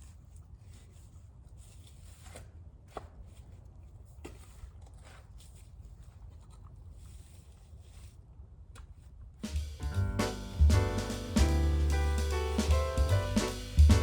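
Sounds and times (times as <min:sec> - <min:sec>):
low microphone rumble: 0:09.6 - 0:14.0.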